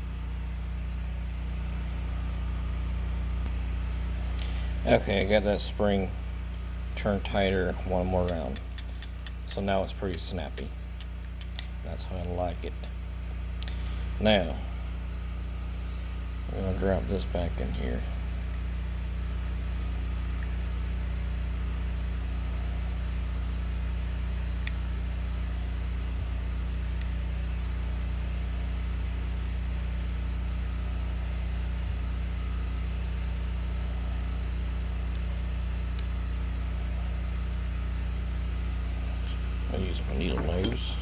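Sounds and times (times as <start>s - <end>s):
low background hum: 0.0s - 41.0s
small metal parts clicking: 8.1s - 11.6s.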